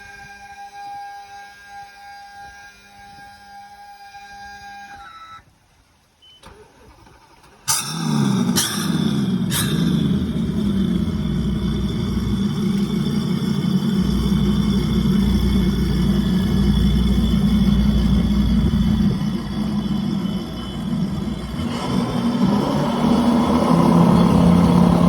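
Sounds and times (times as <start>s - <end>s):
outboard engines starting: 6.3s - 25.0s
outboard engines idling: 6.4s - 25.0s
steady tone: 8.1s - 25.0s.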